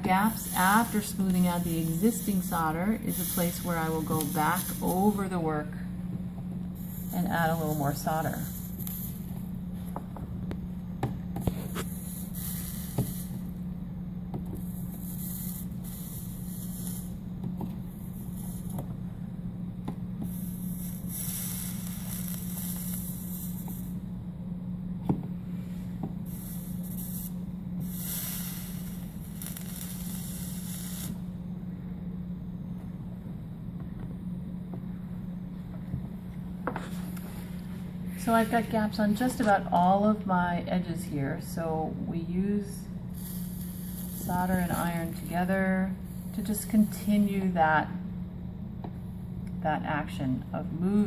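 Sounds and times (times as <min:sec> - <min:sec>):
flux sizzling and hissing: 0:00.0 - 0:05.7, 0:06.8 - 0:09.9, 0:11.4 - 0:13.6, 0:14.5 - 0:18.9, 0:20.2 - 0:24.1, 0:25.6 - 0:31.4, 0:43.0 - 0:47.6
steady low hum: 0:00.0 - 0:51.0.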